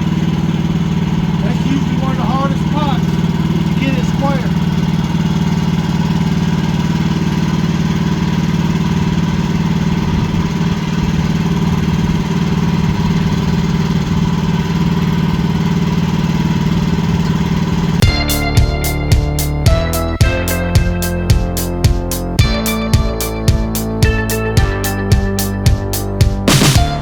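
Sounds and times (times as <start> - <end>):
sawmill engine running: 0.0 - 27.0
guitar-like music: 18.0 - 27.0.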